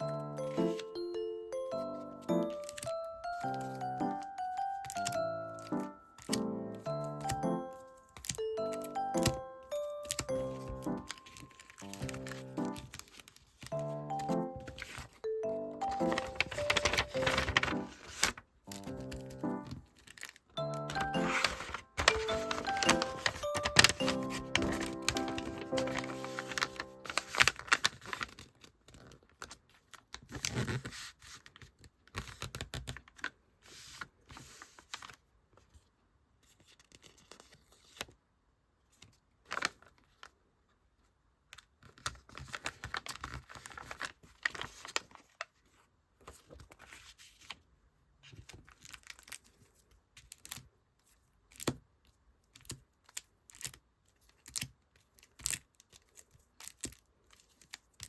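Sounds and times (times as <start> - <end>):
packaging rustling and crinkling: 9.2 - 13.8, 15.8 - 35.2, 39.4 - 40.4, 41.8 - 47.6.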